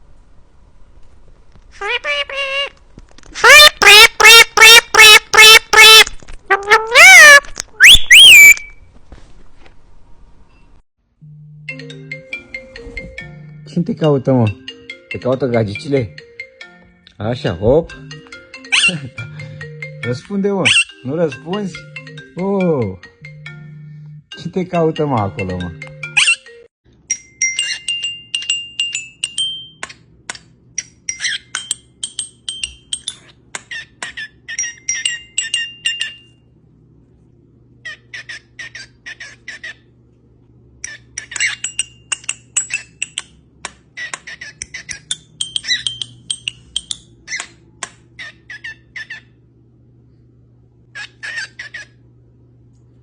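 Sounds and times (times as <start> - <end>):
low background hum: 0.0 - 53.0
parrot clicks chirps and whistles: 7.1 - 8.8, 44.0 - 48.0.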